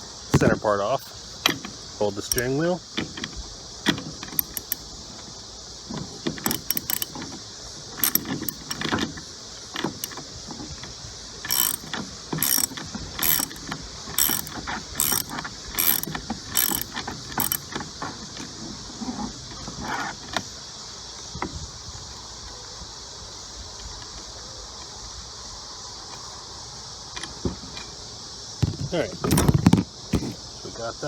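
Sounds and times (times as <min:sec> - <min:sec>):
socket ratchet clicking: 0:02.2 - 0:02.6, 0:04.2 - 0:04.9, 0:06.4 - 0:07.2, 0:08.0 - 0:09.0, 0:09.8 - 0:10.2, 0:11.5 - 0:17.7.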